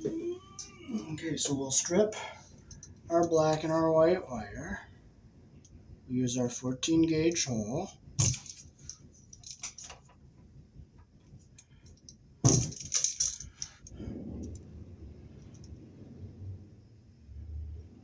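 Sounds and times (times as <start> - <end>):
metallic tool clicking and rattling: 8.2 - 10.0, 11.6 - 14.0.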